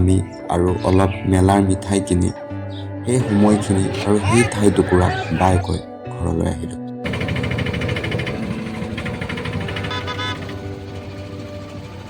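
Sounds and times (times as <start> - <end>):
vehicle engines rattling: 3.1 - 5.6, 7.0 - 12.0
car horn toot: 9.7 - 11.0.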